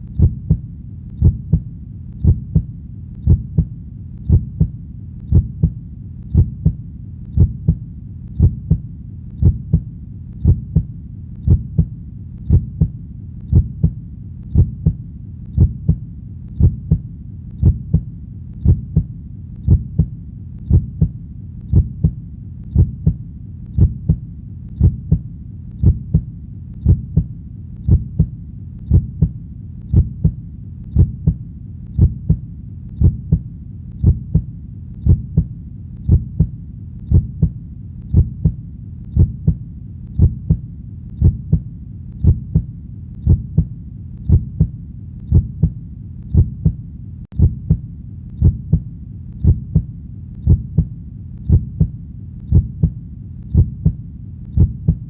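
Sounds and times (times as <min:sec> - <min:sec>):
heartbeat thumps: 0:00.0 - 0:55.0
low hum: 0:00.0 - 0:55.0.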